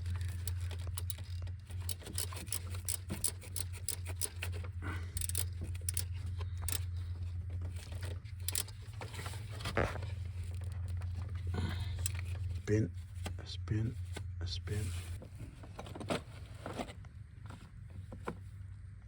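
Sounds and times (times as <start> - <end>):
metal tools clinking and rattling: 0.0 - 12.5
steady low hum: 0.0 - 19.0.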